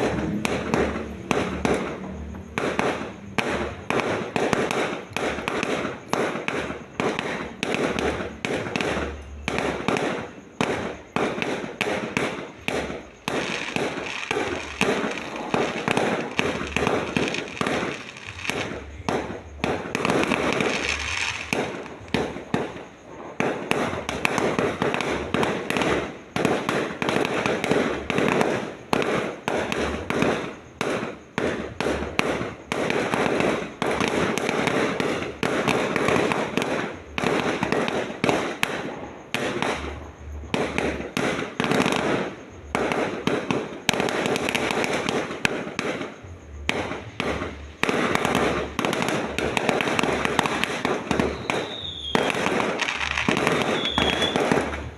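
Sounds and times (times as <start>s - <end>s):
fireworks bangs and crackles: 0.0s - 54.9s.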